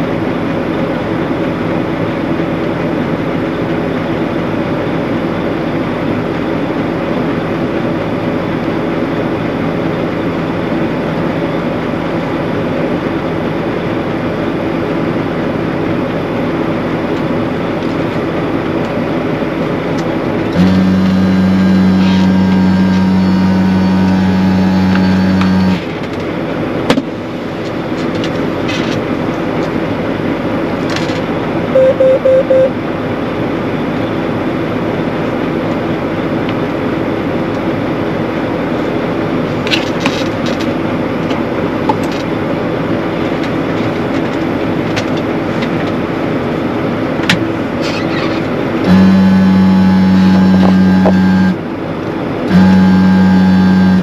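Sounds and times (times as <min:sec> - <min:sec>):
machinery engine running: 0:00.0 - 0:54.0
loud steady low tone: 0:20.4 - 0:25.8, 0:31.7 - 0:32.9, 0:48.8 - 0:51.6, 0:52.5 - 0:54.0
quick beeps: 0:31.8 - 0:32.7.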